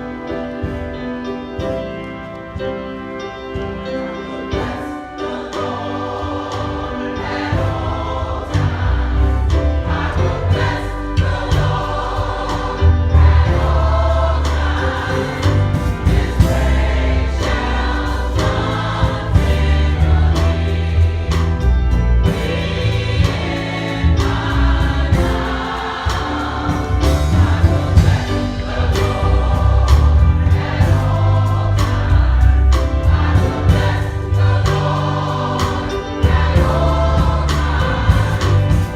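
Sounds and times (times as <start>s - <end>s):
gospel choir singing: 0.0s - 38.9s
instrumental accompaniment with bass: 0.0s - 38.9s.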